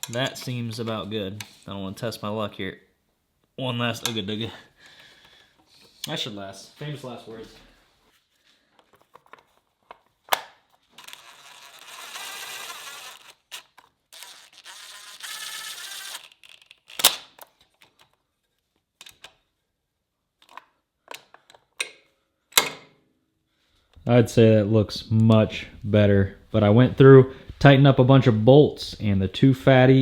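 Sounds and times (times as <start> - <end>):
ratchet wrench clicking: 11.0 - 17.2.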